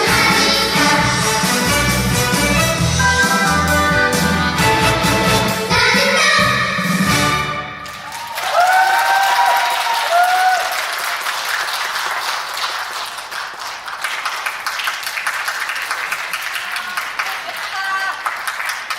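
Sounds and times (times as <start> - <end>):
high cheering voices: 7.8 - 11.3
audience applauding: 7.8 - 18.9.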